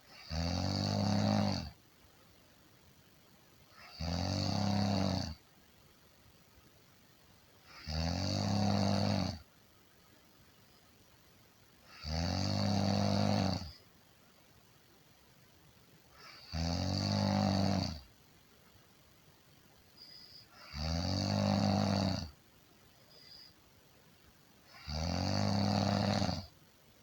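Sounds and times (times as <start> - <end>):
person snoring: 0.1 - 1.7, 3.8 - 5.4, 7.7 - 9.4, 11.9 - 13.8, 16.2 - 18.0, 20.0 - 22.3, 24.7 - 26.5.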